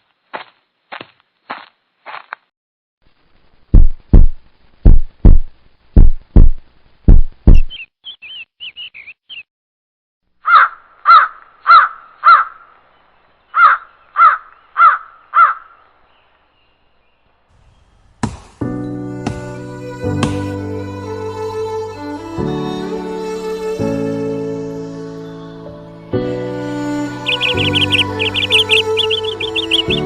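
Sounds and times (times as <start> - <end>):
deep heavy thumps: 3.7 - 7.7
high bird chirps: 7.5 - 9.5, 27.1 - 30.0
crow cawing: 10.4 - 12.6, 13.6 - 15.8, 27.2 - 30.0.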